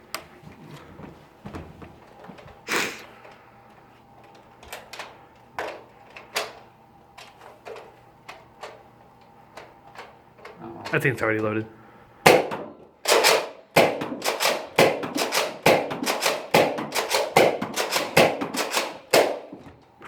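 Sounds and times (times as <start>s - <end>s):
toy blaster firing: 12.2s - 19.5s.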